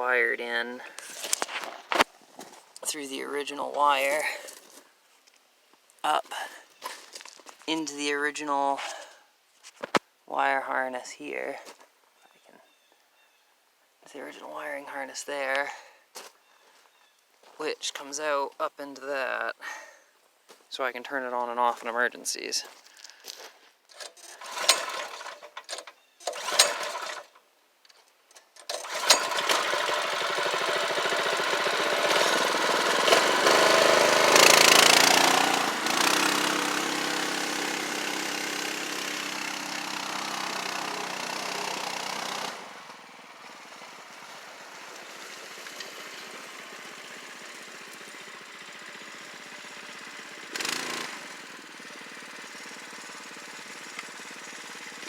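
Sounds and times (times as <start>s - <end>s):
engine starting and running: 23.9s - 27.4s, 28.4s - 55.0s.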